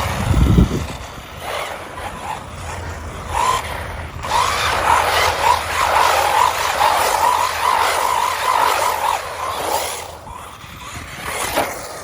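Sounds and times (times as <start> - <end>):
electric toy car driving: 0.0 - 12.0
tyres squealing: 0.0 - 12.0.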